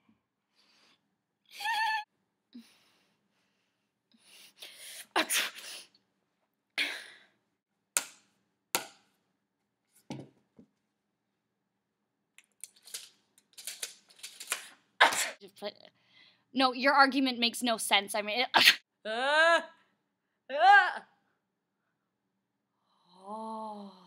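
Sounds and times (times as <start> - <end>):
person fake-sneezing: 15.0 - 15.4, 18.5 - 19.8.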